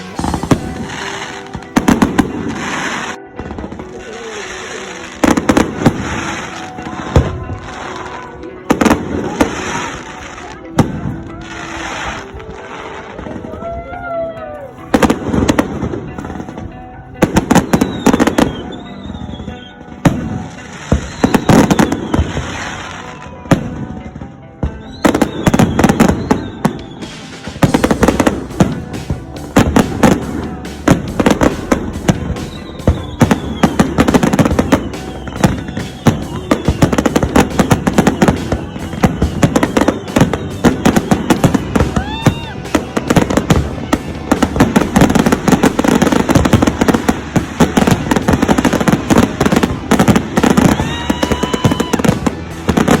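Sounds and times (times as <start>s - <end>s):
firework bangs and crackle: 0.0s - 53.0s
whistling firework shells: 17.5s - 19.9s, 20.8s - 23.1s, 24.7s - 28.2s, 32.3s - 43.7s, 44.4s - 53.0s.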